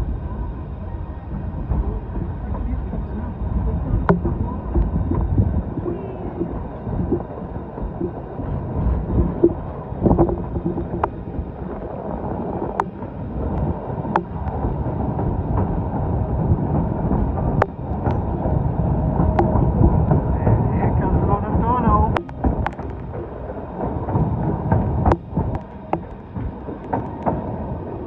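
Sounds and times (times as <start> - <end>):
train rumbling on rails: 0.0 - 28.0
wind buffeting microphone: 0.0 - 28.0.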